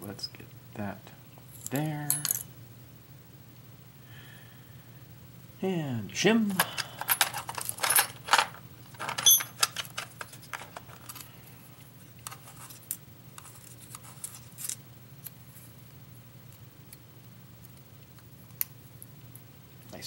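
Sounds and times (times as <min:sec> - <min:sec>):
metal lock clicks and clinks: 0:07.1 - 0:10.1.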